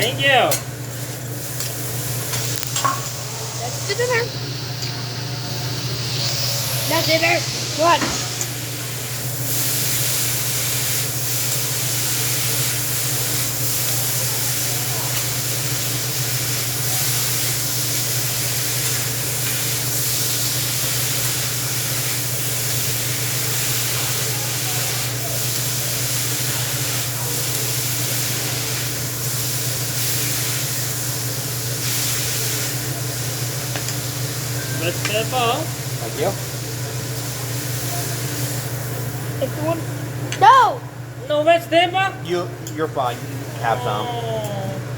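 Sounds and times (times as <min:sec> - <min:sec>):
food sizzling on a grill: 0:00.0 - 0:40.6
low hum: 0:02.2 - 0:09.0.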